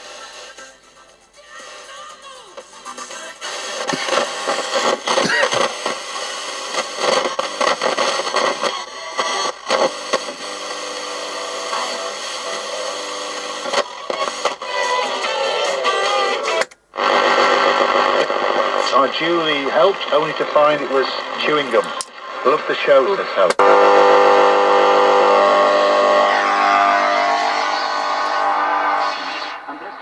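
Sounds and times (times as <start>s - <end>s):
music from radio: 0.0s - 30.0s
radio being tuned: 0.0s - 30.0s
broadcast talk: 16.4s - 30.0s.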